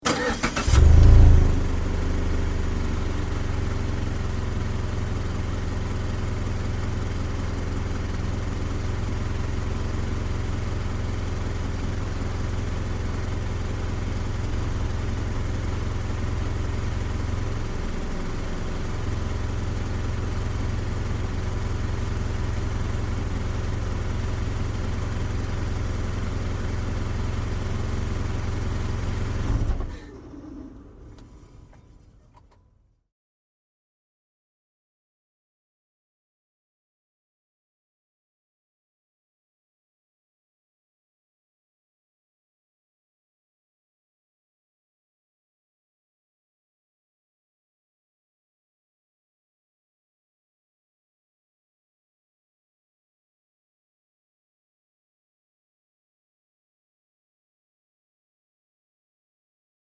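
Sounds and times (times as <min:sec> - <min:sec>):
car starter cranking: 0:00.0 - 0:01.2, 0:29.4 - 0:32.6
car engine revving and idling: 0:00.6 - 0:08.4, 0:15.4 - 0:32.2.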